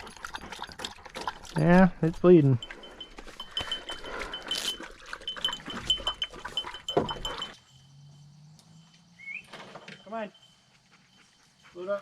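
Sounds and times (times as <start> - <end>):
dog panting and snuffling: 0.0 - 1.6, 2.6 - 7.6, 10.7 - 12.0
collar bell tinkling: 1.5 - 9.1, 9.8 - 12.0.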